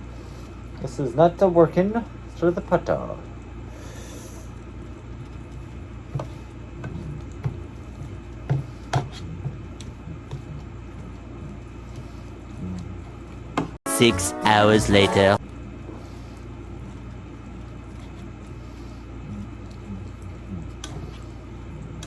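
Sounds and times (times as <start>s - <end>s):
low hum: 9.2s - 22.0s.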